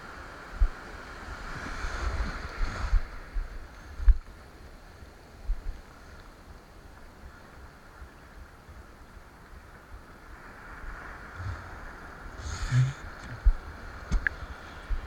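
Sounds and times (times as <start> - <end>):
ocean surf hissing: 10.3 - 15.0
wind buffeting microphone: 10.8 - 15.0.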